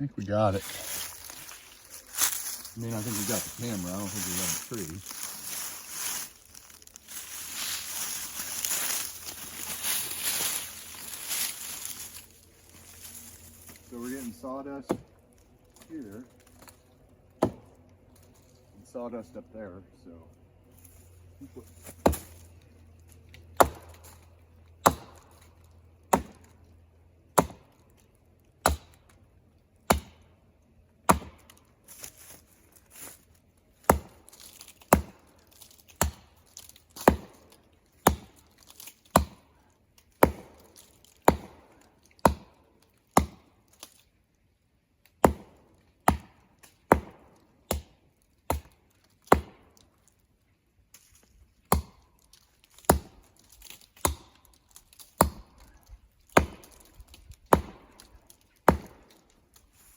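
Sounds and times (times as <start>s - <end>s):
axe chopping into tree trunk: 14.9s - 15.1s, 17.4s - 17.8s, 21.8s - 22.5s, 23.5s - 25.5s, 26.1s - 26.5s, 27.3s - 27.8s, 28.6s - 29.2s, 29.8s - 30.3s, 31.0s - 31.6s, 33.8s - 39.5s, 40.1s - 44.0s, 45.2s - 49.8s, 51.6s - 52.0s, 52.7s - 59.2s.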